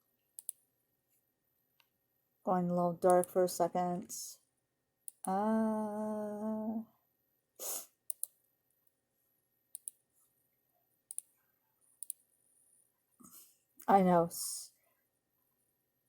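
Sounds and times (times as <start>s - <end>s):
woman humming: 5.2s - 6.9s.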